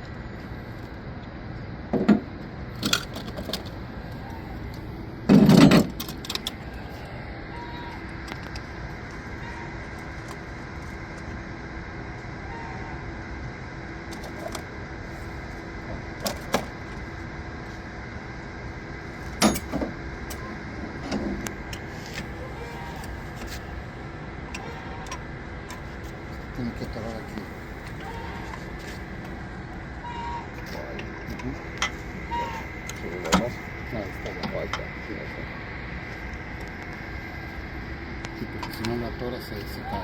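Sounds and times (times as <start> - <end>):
steady background hum: 0.0 - 40.0
metal clanks and knocks: 5.3 - 6.6, 19.4 - 20.0.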